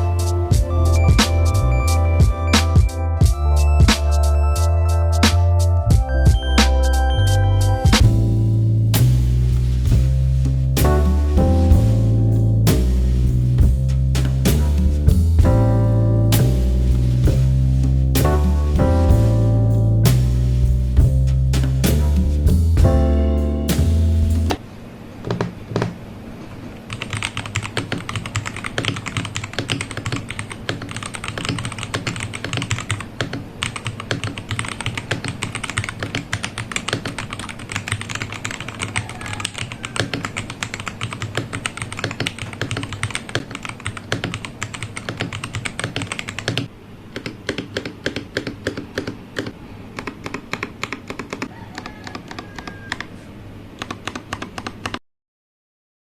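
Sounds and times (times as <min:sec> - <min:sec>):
mechanical keyboard typing: 0:26.9 - 0:53.1, 0:53.8 - 0:55.0.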